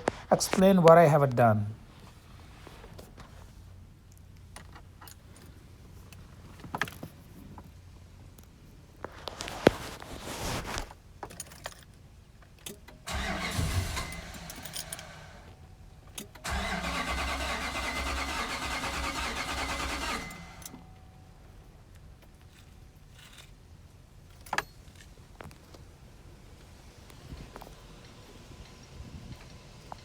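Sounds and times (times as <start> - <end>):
engine cranking on starter: 13.1 - 15.6, 16.2 - 21.0.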